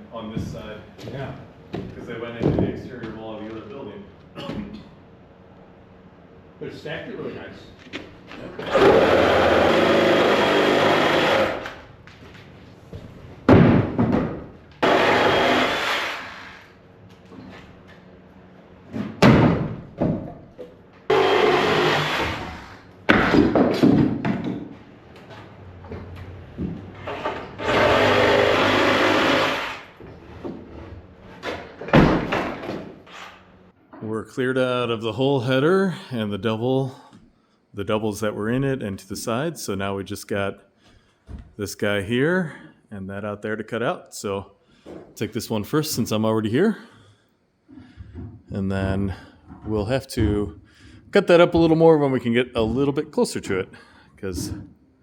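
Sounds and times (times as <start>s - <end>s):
power saw whining: 8.6s - 11.8s, 14.8s - 16.7s, 21.1s - 22.9s, 27.2s - 30.0s.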